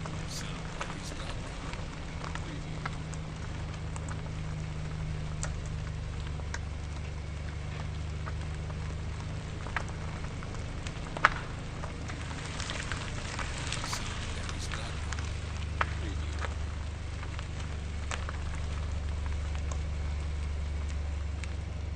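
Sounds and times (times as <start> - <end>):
tyres crunching over gravel: 0.0 - 21.9
stone popping under tyre: 2.2 - 13.8.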